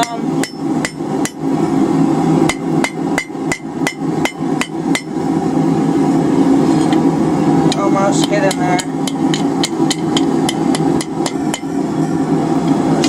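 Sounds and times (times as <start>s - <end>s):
hammer striking steel on anvil: 0.0s - 1.4s, 2.5s - 5.2s, 7.7s - 11.8s.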